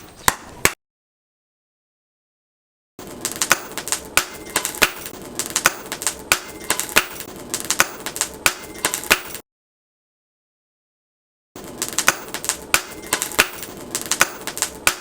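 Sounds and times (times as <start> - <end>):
hammer striking steel on anvil: 3.4 - 9.4, 12.0 - 15.0.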